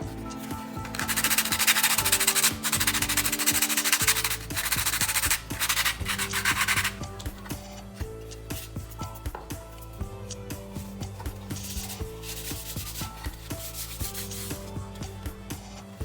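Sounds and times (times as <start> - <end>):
background music: 0.0 - 16.0
fast sanding strokes: 0.9 - 7.0, 11.6 - 14.6.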